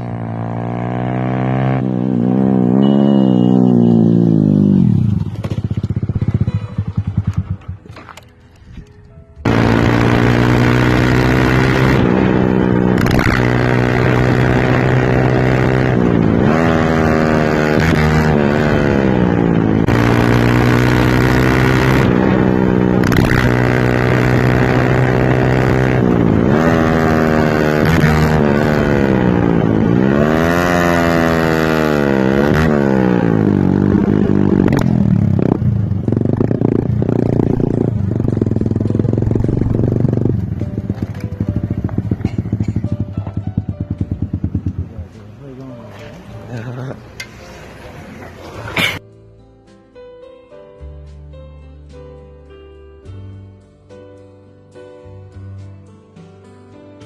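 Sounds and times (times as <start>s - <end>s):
motorcycle engine revving: 0.0s - 8.3s, 9.4s - 46.5s
exhaust pops: 34.6s - 45.6s.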